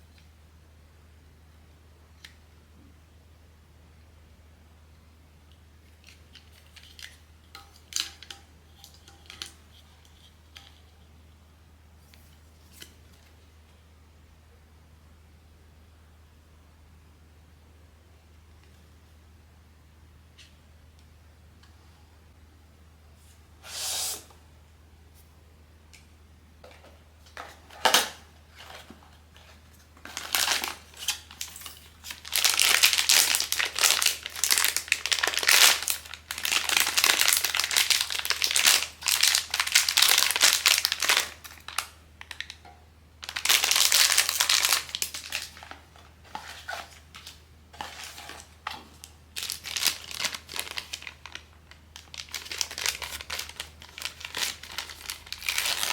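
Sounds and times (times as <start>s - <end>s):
plastic wrapping crinkling and tearing: 27.7s - 42.6s, 43.2s - 55.9s.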